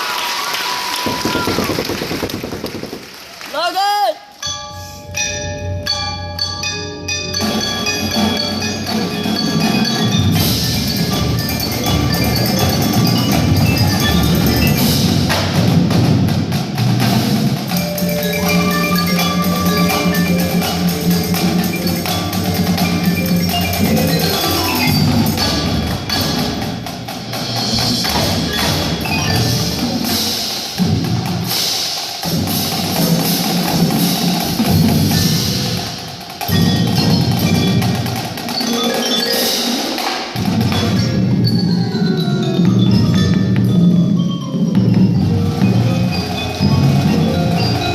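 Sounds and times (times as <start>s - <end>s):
drums: 0.0s - 4.2s, 5.0s - 47.9s
bells: 4.3s - 15.3s, 17.0s - 30.5s, 34.6s - 47.9s
marimbas and xylophones: 4.3s - 47.9s.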